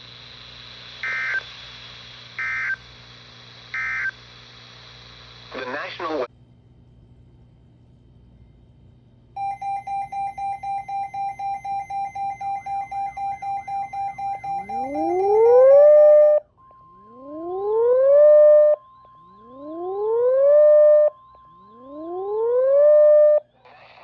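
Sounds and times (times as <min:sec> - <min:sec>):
rapid electronic beeping: 0:09.4 - 0:17.2
steady electronic tone: 0:09.4 - 0:23.5.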